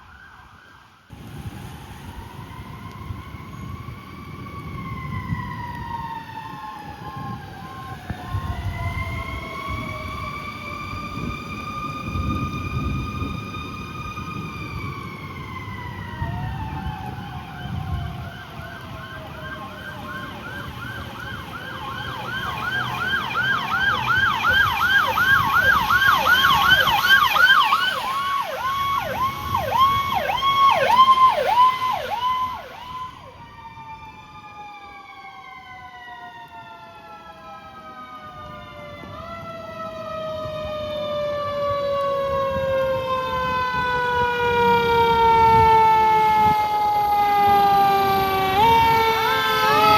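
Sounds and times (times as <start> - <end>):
fire engine siren: 0.0 - 49.9.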